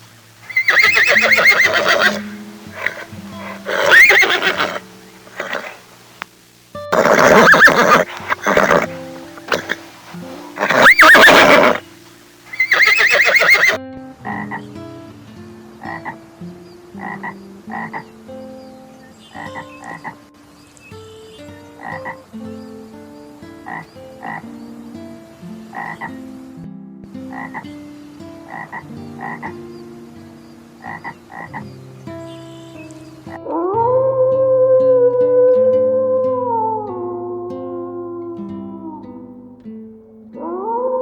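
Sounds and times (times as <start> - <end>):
loud drawn-out animal calls: 0.4 - 6.0, 6.9 - 11.9, 12.5 - 14.6, 15.8 - 16.2, 17.0 - 18.1, 19.3 - 20.2, 21.8 - 22.2, 23.6 - 24.5, 25.7 - 26.1, 28.5 - 29.6, 30.8 - 31.7
short animal calls: 0.4 - 6.0, 6.9 - 11.9, 12.5 - 14.6.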